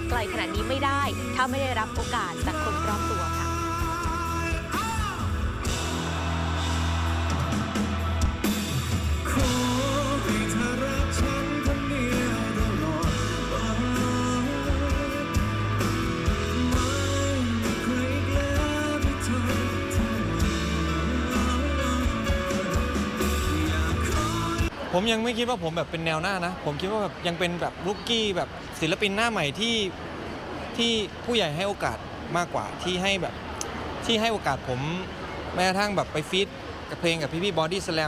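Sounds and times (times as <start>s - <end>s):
rock song with guitar: 0.0s - 24.7s
steady bass line: 0.0s - 24.7s
sung melody: 0.0s - 24.7s.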